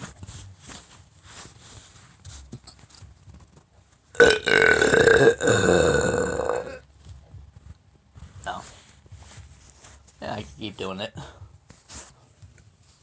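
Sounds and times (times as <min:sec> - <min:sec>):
person burping loudly: 0:04.2 - 0:06.8.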